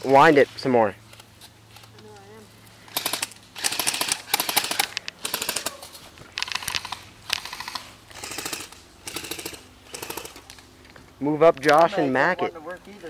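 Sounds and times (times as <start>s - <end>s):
fast ratcheting clicks: 2.9s - 5.7s, 6.4s - 10.5s.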